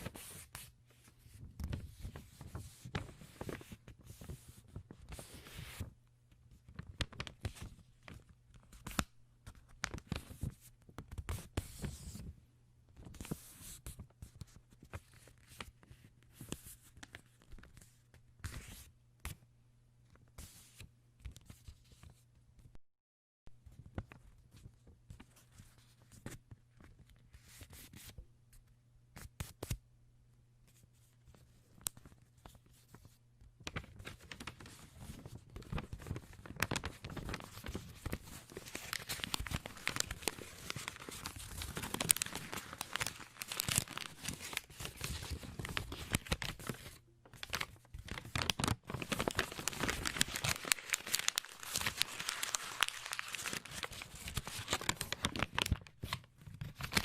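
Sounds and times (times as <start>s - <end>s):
paper tearing and crumpling: 35.7s - 46.8s, 47.4s - 55.9s.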